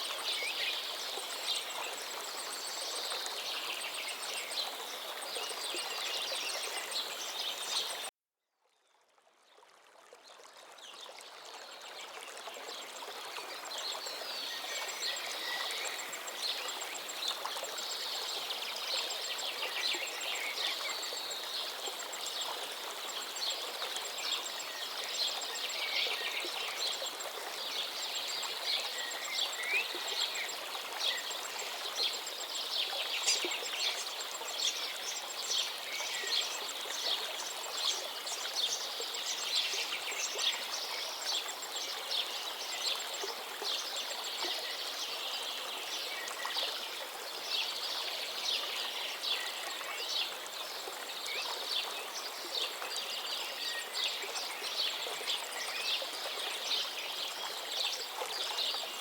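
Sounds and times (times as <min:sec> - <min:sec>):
stream water rushing: 0:12.4 - 0:59.0.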